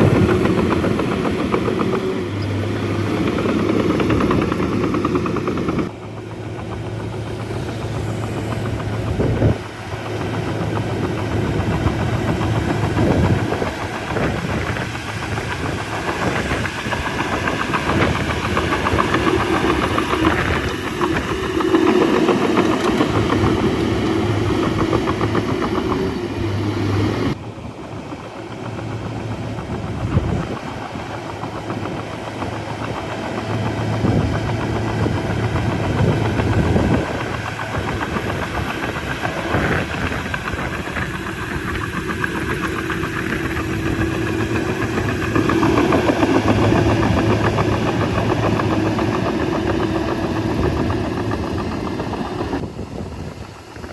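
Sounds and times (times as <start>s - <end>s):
bulldozer diesel engine: 0.0s - 53.9s
steel tracks clattering: 7.5s - 27.4s.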